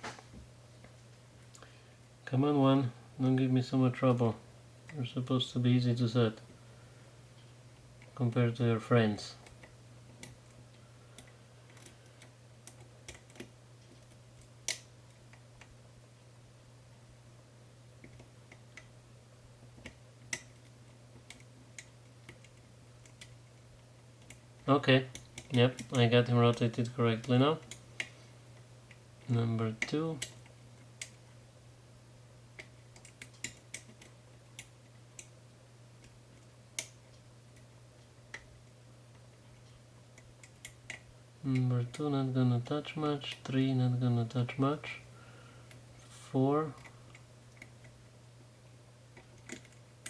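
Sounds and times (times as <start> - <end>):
faint steady hum: 0.0 - 50.0
lock pick metallic clicks: 32.6 - 35.3, 49.2 - 49.8.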